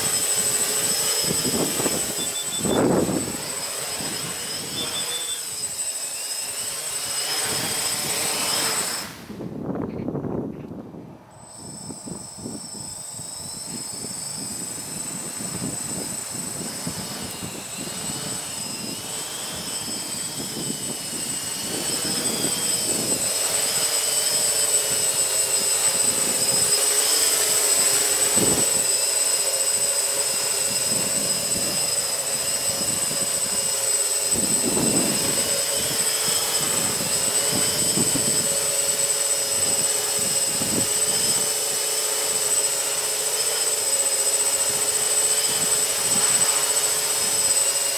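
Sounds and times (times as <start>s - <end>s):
wind buffeting microphone: 0.0s - 5.8s, 7.4s - 23.9s, 28.3s - 28.9s, 30.6s - 39.0s, 39.6s - 41.6s
drone propellers whining: 0.0s - 47.9s.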